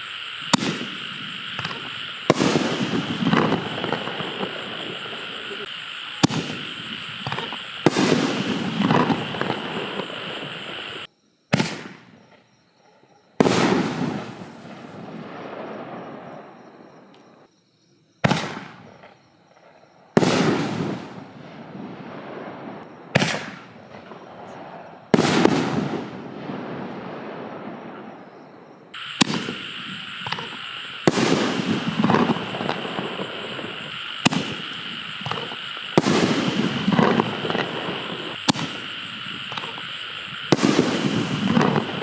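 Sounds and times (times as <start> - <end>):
firework shells banging: 0.4 - 11.0, 29.0 - 42.0.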